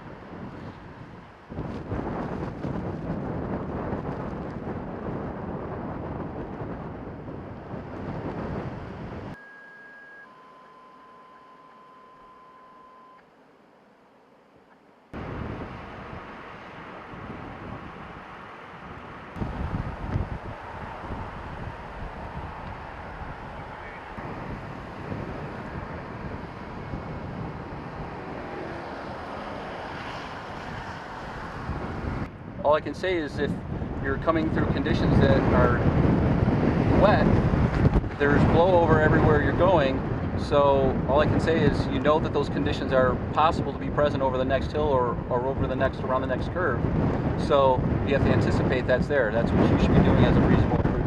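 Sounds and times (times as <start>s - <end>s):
wind buffeting microphone: 0.0s - 9.4s, 15.2s - 51.0s
faint electronic tone: 9.4s - 13.3s.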